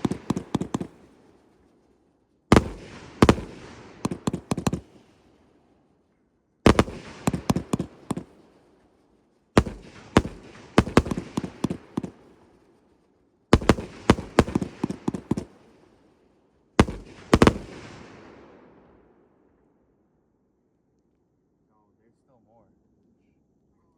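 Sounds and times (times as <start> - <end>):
firework volleys of sharp bangs: 0.0 - 6.0, 6.6 - 19.1.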